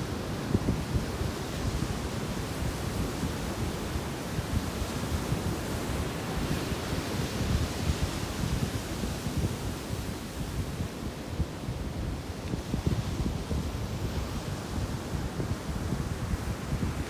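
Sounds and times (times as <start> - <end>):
sea surf on beach: 0.0 - 17.0
wind buffeting microphone: 0.0 - 17.0.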